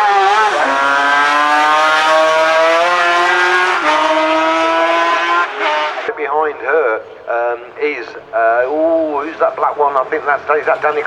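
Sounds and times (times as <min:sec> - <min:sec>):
racing engine accelerating: 0:00.0 - 0:06.1.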